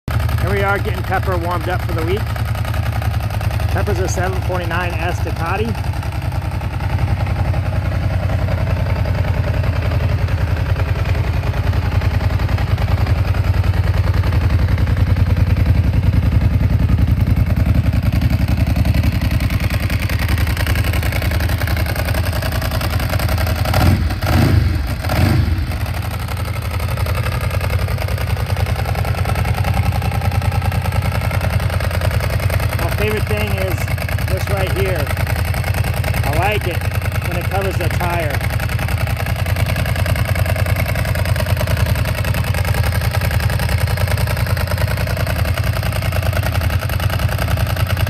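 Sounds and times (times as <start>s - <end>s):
motorcycle engine idling: 0.1s - 48.0s
dry clutch clatter: 17.7s - 48.0s.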